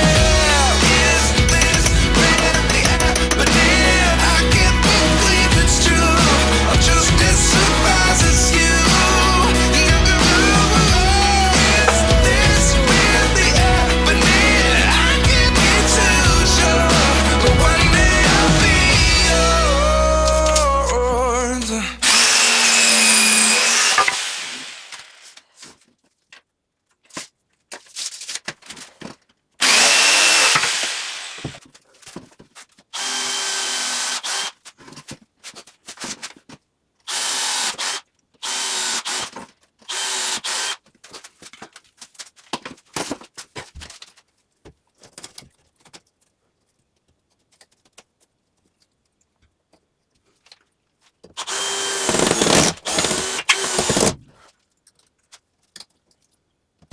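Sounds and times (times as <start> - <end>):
power drill running: 0.0 - 19.5, 22.0 - 25.3, 29.6 - 31.6, 33.0 - 34.6, 37.1 - 40.8, 51.4 - 54.2
handling clicks and knocks: 1.4 - 3.5.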